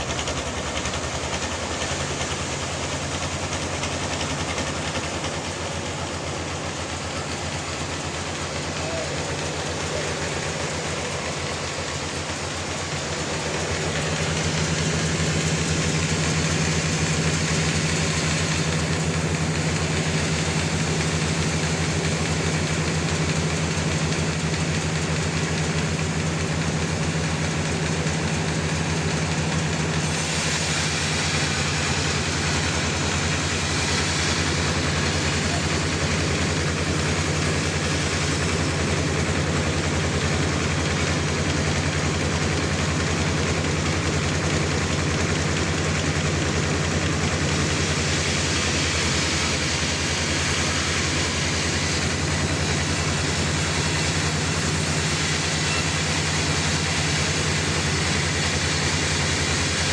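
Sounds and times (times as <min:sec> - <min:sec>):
saw blade cutting log: 0:00.0 - 0:59.9
sawmill engine hum: 0:00.0 - 0:59.9.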